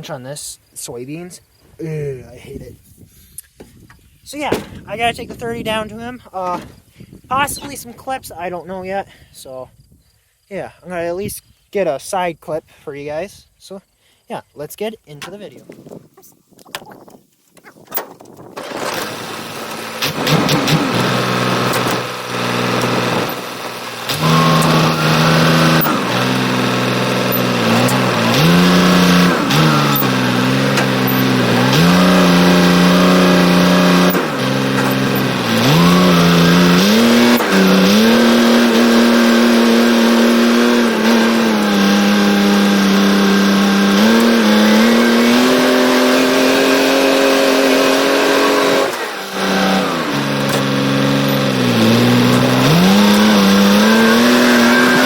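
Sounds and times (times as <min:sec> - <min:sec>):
vehicle engine revving: 0:18.6 - 0:55.0.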